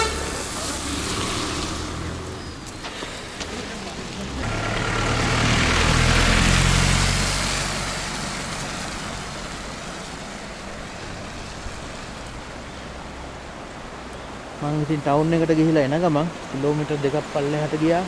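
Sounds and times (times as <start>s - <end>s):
vehicle passing by: 0.0s - 14.0s.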